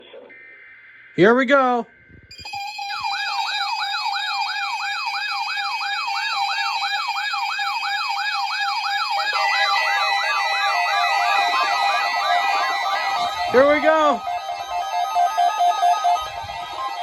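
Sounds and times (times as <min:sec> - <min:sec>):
electronic siren sweeping: 0:00.3 - 0:17.0
warbling alarm: 0:00.3 - 0:17.0
steady tone: 0:09.1 - 0:17.0.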